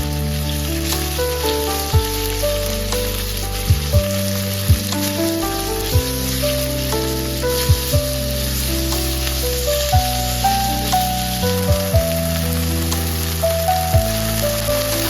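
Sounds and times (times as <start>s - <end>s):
background music with drum hits: 2.9s - 6.2s, 7.7s - 8.2s.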